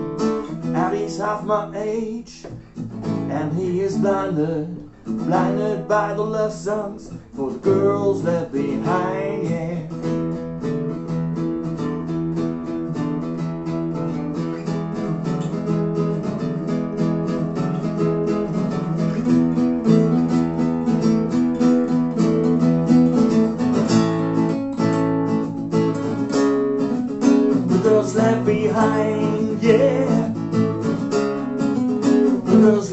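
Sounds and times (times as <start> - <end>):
acoustic guitars strumming chords: 0.0 - 32.9.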